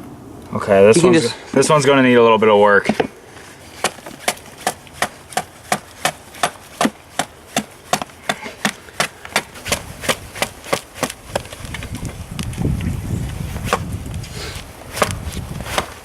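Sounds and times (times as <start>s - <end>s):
blade chopping wood: 3.8s - 12.6s, 13.6s - 13.9s, 14.8s - 16.0s.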